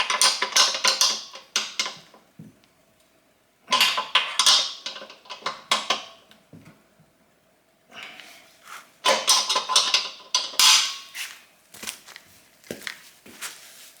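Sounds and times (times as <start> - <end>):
metal tools clinking and scraping: 9.1 - 11.2.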